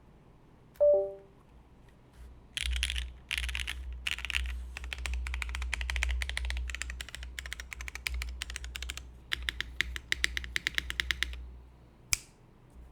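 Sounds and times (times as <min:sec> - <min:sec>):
typing on mechanical keyboard: 0:02.6 - 0:11.4.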